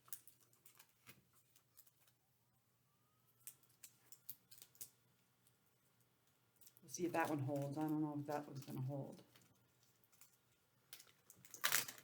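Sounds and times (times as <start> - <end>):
paper and tape rustling: 0.0 - 2.2, 6.6 - 12.0.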